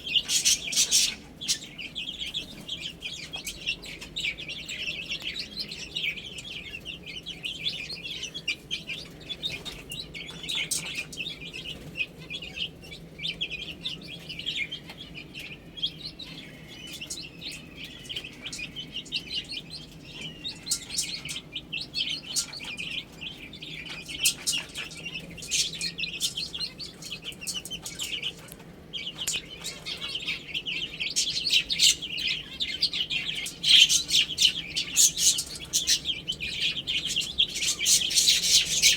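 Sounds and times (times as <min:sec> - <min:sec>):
chicks peeping: 0:00.0 - 0:38.9.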